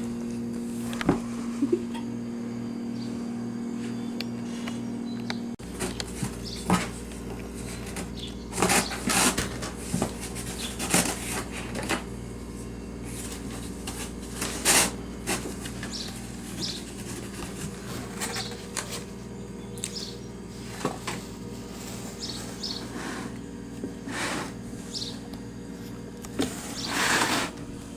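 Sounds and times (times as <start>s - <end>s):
steady low hum: 0.0s - 27.9s
kitten scratching cardboard box: 5.6s - 12.1s, 13.0s - 19.0s, 26.4s - 27.6s.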